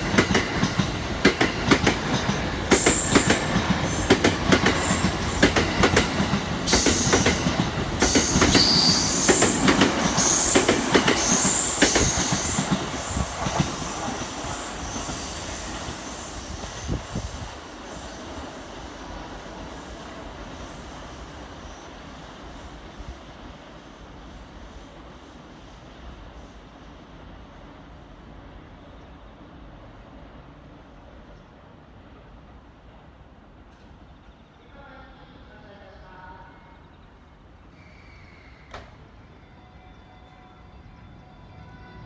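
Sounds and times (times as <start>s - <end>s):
train wheels clicking over rail joints: 0.0s - 14.2s
train wheels squealing: 0.0s - 18.6s, 36.5s - 42.0s.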